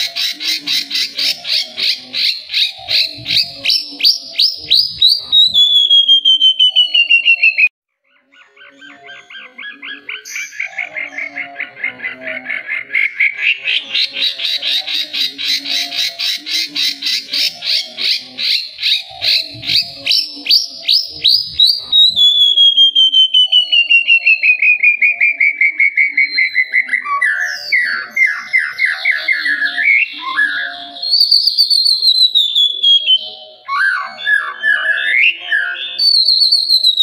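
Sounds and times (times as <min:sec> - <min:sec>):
bird singing whistled notes: 0:01.9 - 0:07.7, 0:17.0 - 0:37.0.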